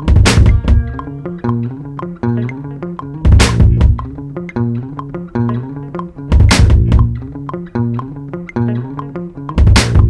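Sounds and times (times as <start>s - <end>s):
instrumental beat music: 0.0s - 10.0s
drum and cymbal hit: 0.1s - 0.9s, 3.3s - 4.0s, 6.4s - 7.1s, 9.6s - 10.0s.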